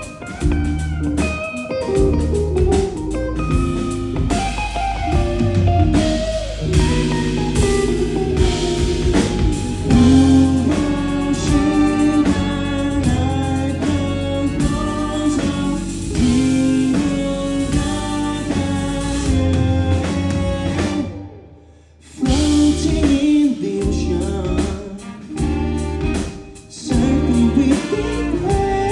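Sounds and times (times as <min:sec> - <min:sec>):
live rock band playing: 0:00.0 - 0:21.6, 0:22.2 - 0:28.9
person singing: 0:06.0 - 0:21.1, 0:22.2 - 0:28.9.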